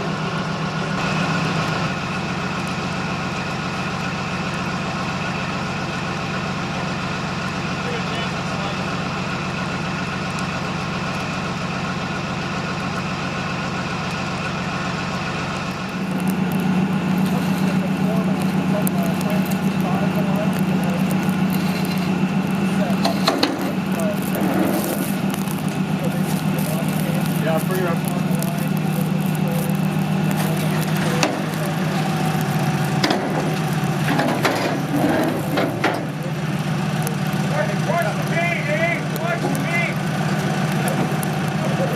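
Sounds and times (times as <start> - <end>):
heavy vehicle engine idling: 0.0 - 41.9
sharp cracks or knocks: 29.6 - 36.2.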